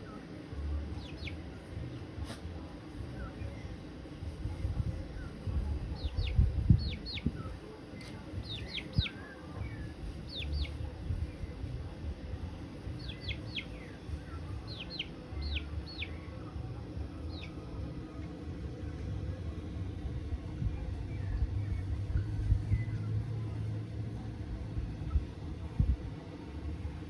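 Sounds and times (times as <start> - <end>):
bird chirping: 0.9 - 2.1, 6.0 - 10.9, 13.0 - 16.4, 17.2 - 17.6
low rumble: 8.4 - 27.0.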